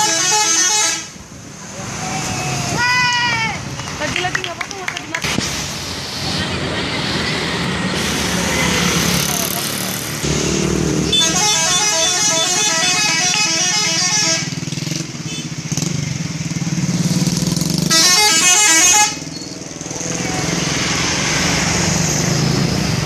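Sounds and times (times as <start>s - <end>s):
bus musical horn melody: 0.0s - 1.2s, 11.1s - 14.6s, 17.9s - 19.4s.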